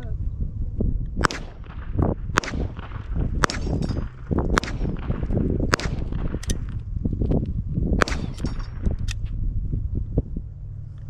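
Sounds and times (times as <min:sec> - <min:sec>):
gunshots with ringing tail: 0:01.2 - 0:06.7, 0:08.0 - 0:09.2.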